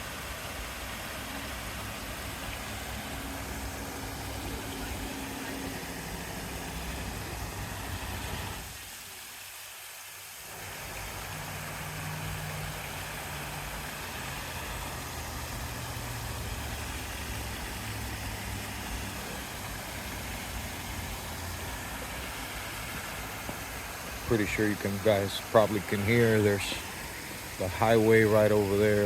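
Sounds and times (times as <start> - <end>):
highway traffic drone: 0.0 - 8.7, 10.5 - 29.0
low hum: 0.9 - 8.7.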